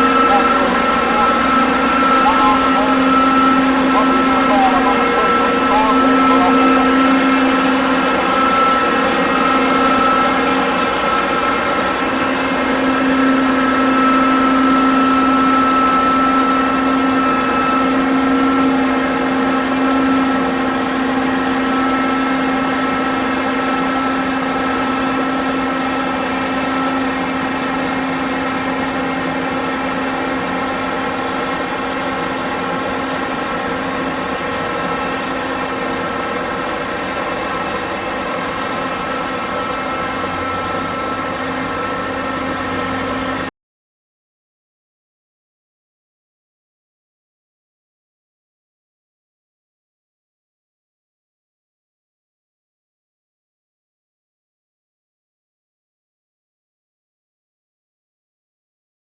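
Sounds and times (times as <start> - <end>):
combine harvester engine humming: 0.0 - 43.5.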